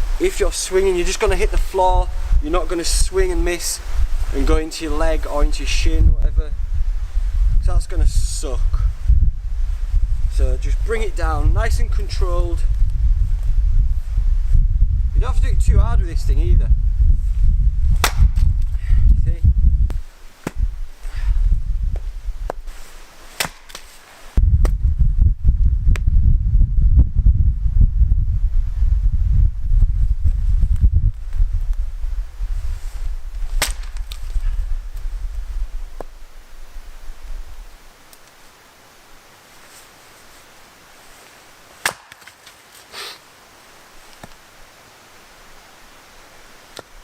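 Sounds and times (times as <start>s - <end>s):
wind buffeting microphone: 0.0s - 22.7s, 24.4s - 37.9s
axe chopping log: 18.0s - 18.4s, 20.4s - 20.6s, 23.4s - 23.9s, 33.6s - 34.0s, 41.8s - 42.4s
split wood falling: 18.0s - 18.5s, 23.3s - 24.0s, 33.5s - 34.4s, 41.8s - 42.9s.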